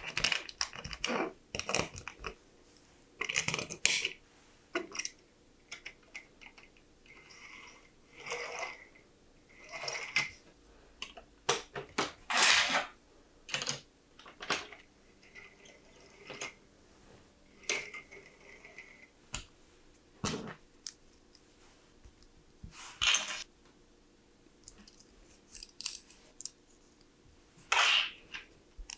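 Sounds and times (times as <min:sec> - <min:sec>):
plastic pieces clicking together: 0:00.0 - 0:02.4, 0:24.6 - 0:26.6
plastic pieces rattling: 0:12.3 - 0:14.8.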